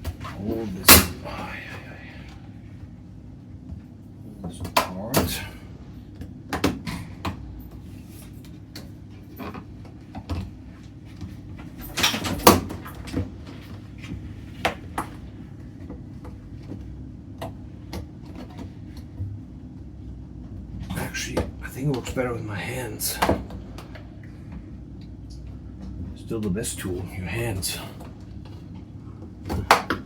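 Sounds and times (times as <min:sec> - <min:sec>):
steady low hum: 0:00.0 - 0:30.0.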